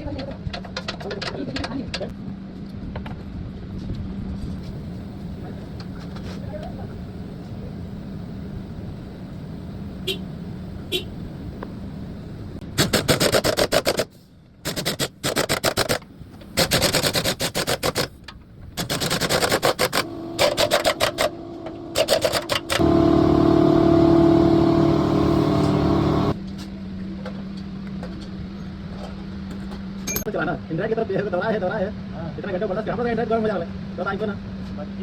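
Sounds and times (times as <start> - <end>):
impact wrench hammering: 18.8 - 23.0.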